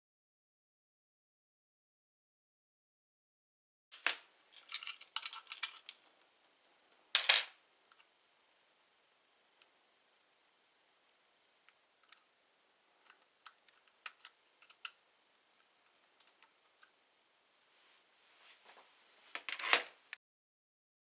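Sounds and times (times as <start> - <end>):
plastic and metal parts clicking: 4.0 - 6.0, 13.0 - 16.9.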